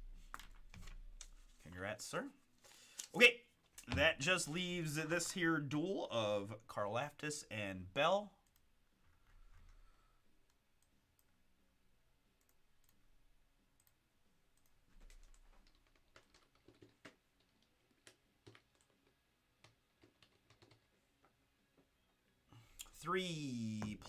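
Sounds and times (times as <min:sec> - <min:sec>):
computer mouse and keyboard clicks: 0:14.6 - 0:21.4.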